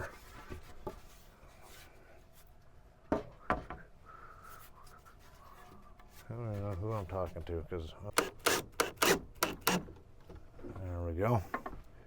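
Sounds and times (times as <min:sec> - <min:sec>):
faint rubbing and handling: 0:00.0 - 0:03.0, 0:04.4 - 0:07.9.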